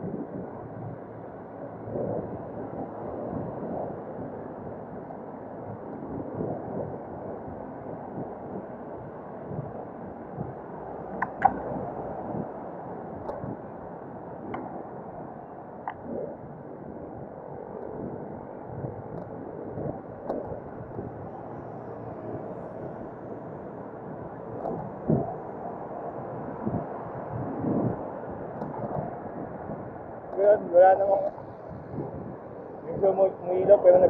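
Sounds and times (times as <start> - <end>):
wind buffeting microphone: 0.0 - 34.0.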